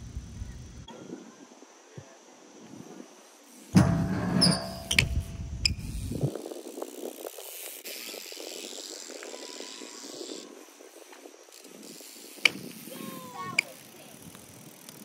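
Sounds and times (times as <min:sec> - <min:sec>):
bike tyres rumbling on ground: 0:03.5 - 0:15.0.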